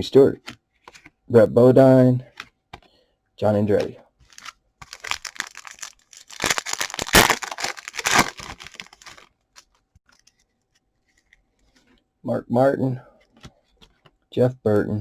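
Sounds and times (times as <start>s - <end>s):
wrapper tearing and crinkling: 4.3s - 9.3s.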